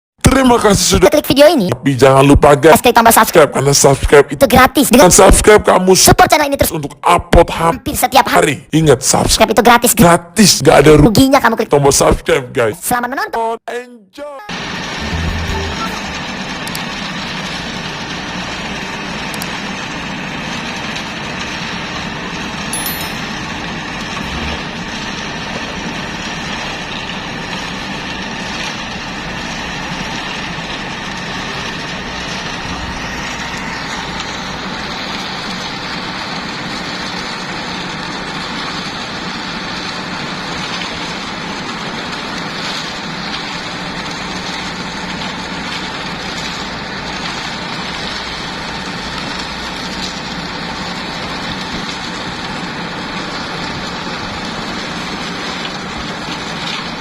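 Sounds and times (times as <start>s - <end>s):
concrete mixer truck engine: 14.5s - 57.0s
excavator diesel engine: 14.5s - 57.0s.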